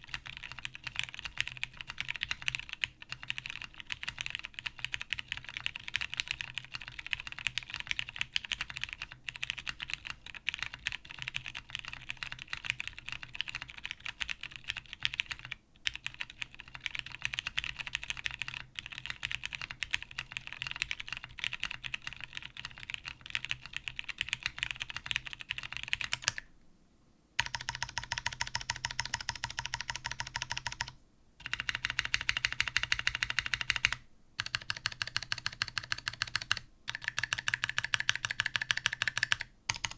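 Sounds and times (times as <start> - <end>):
typing on mechanical keyboard: 0.0 - 26.5, 27.4 - 39.9
stabilized keys pressed repeatedly: 12.6 - 26.4, 27.4 - 39.9.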